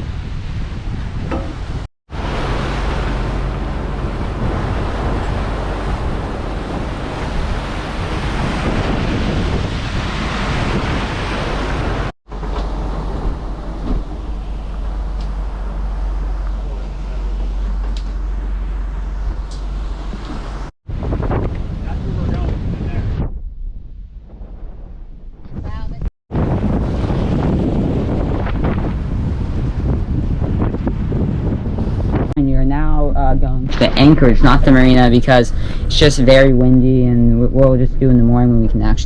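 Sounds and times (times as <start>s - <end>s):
rushing sea water: 0.0s - 22.9s, 26.3s - 32.4s
steady low rumble: 0.0s - 39.0s
wind buffeting microphone: 0.0s - 39.0s.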